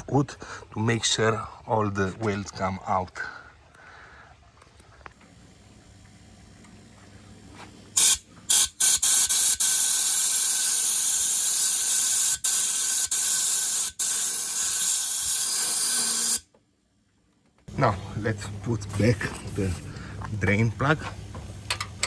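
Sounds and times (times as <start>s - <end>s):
hissing spray from nozzle: 8.0s - 16.4s.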